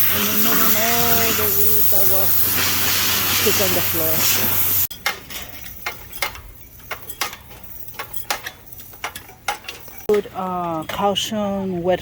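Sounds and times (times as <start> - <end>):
pressure washer spray hissing: 0.0 - 4.9.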